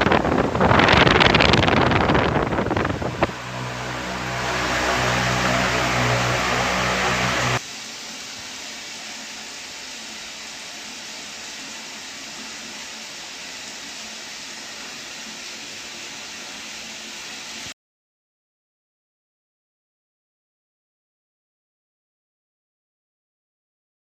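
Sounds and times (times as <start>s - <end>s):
wall fan running: 0.0s - 17.3s
steady hiss: 0.0s - 17.7s.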